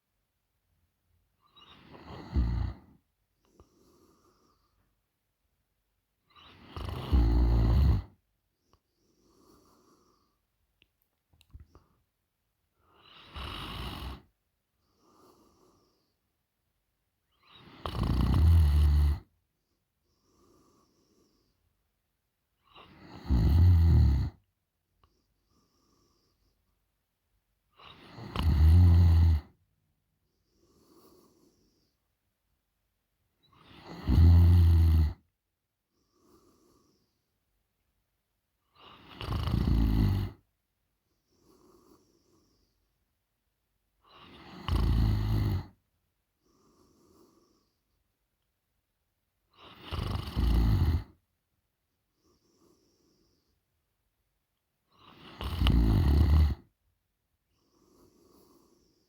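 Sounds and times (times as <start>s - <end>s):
faint breath: 1.5s - 5.1s, 8.0s - 10.6s, 12.7s - 16.5s, 19.6s - 21.9s, 25.0s - 26.9s, 30.2s - 32.2s, 35.8s - 37.5s, 41.1s - 43.1s, 46.3s - 48.1s, 52.0s - 53.9s, 57.5s - 59.0s
woman snoring loudly: 6.5s - 8.1s, 13.2s - 14.2s, 17.8s - 19.2s, 23.0s - 24.3s, 27.9s - 29.4s, 33.7s - 35.2s, 39.0s - 40.4s, 44.3s - 45.7s, 49.7s - 51.1s, 55.2s - 56.6s.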